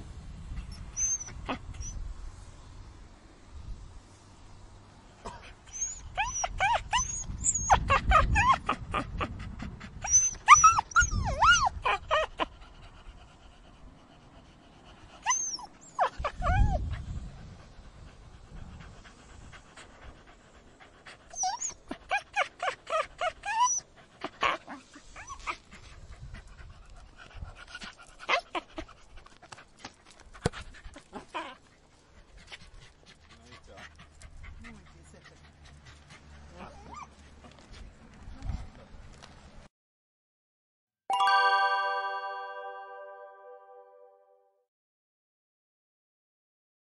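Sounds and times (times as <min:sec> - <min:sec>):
puppy whining: 0:00.7 - 0:02.0, 0:05.7 - 0:09.2, 0:10.0 - 0:12.4, 0:15.2 - 0:16.8, 0:21.3 - 0:25.6, 0:36.6 - 0:37.1.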